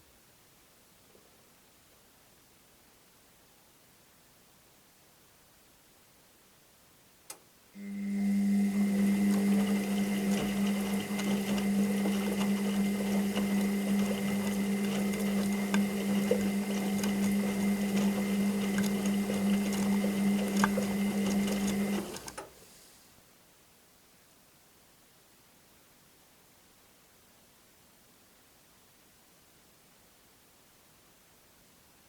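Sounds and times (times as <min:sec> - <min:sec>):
washing machine motor whine: 0:07.8 - 0:22.4
small clicks: 0:09.3 - 0:22.5.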